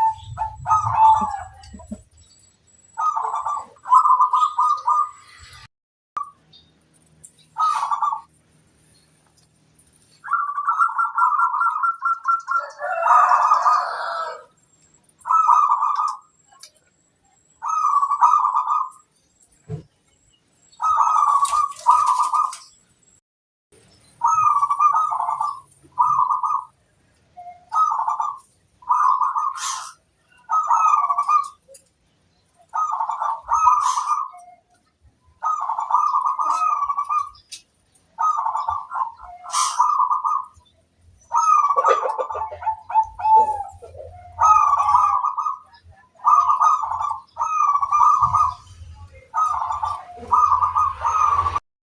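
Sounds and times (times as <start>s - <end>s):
dove cooing: 0.0s - 2.1s, 3.0s - 5.7s, 7.6s - 8.3s, 10.2s - 14.5s, 15.2s - 16.6s, 17.6s - 19.0s, 20.8s - 22.7s, 24.2s - 26.8s, 27.4s - 31.9s, 32.5s - 34.7s, 35.3s - 51.6s.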